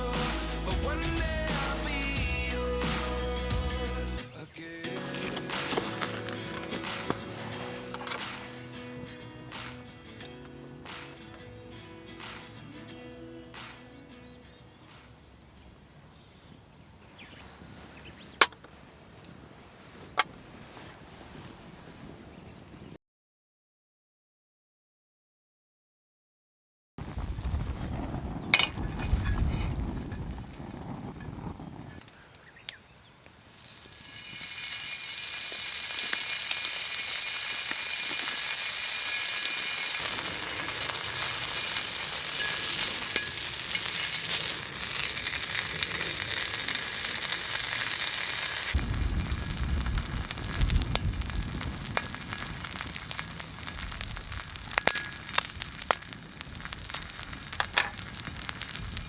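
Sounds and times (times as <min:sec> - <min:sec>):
food sizzling in a pan: 0:04.9 - 0:09.8, 0:33.3 - 0:59.0
low rumble: 0:48.8 - 0:53.2.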